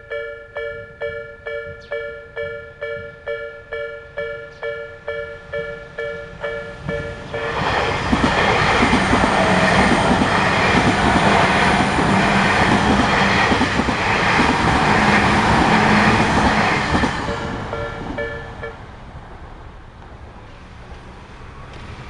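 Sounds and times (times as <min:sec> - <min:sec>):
electronic crossing alarm: 0:00.0 - 0:07.5, 0:17.2 - 0:18.8
train rolling past: 0:00.1 - 0:22.0.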